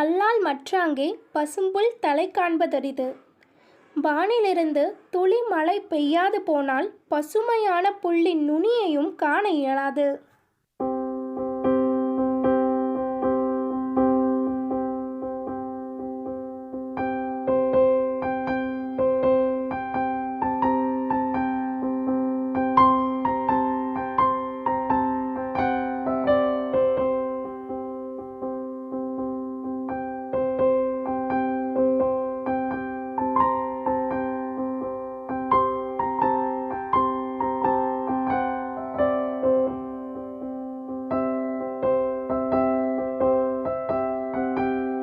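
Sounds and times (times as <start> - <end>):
gentle electric piano melody: 10.8 - 45.0.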